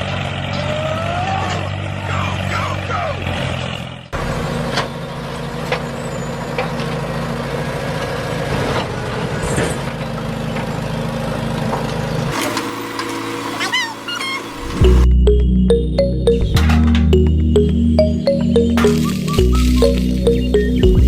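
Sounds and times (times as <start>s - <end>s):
truck engine running: 0.0s - 15.4s.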